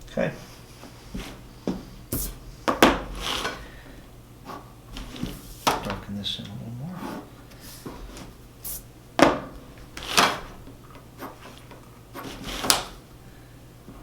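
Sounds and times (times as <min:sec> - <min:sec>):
pencil scraping on paper: 0:06.9 - 0:08.8, 0:11.2 - 0:12.7.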